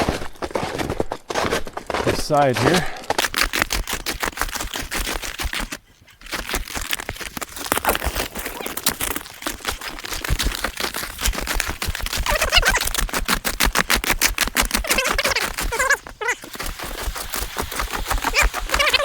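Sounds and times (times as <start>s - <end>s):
snowshoe footsteps on snow: 0.0s - 13.0s.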